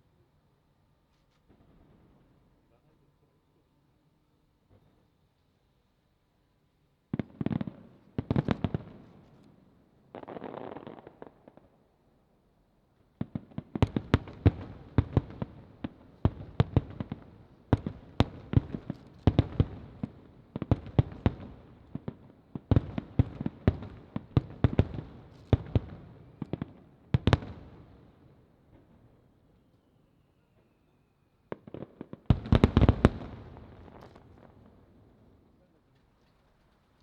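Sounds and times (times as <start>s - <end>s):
fireworks bursting: 31.6s - 34.9s.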